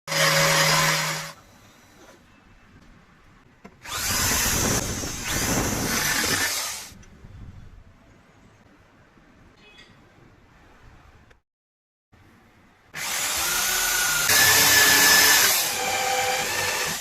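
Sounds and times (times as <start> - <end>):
power tool humming: 0.1 - 1.4, 13.0 - 17.0.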